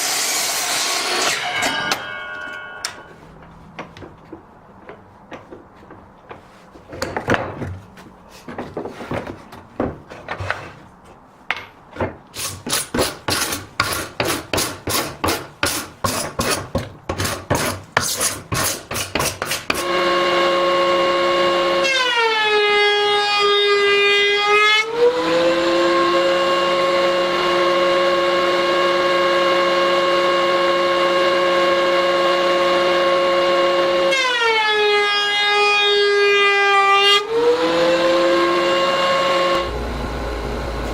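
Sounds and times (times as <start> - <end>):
power tool motor cutting wood: 19.6 - 22.0, 35.4 - 40.9.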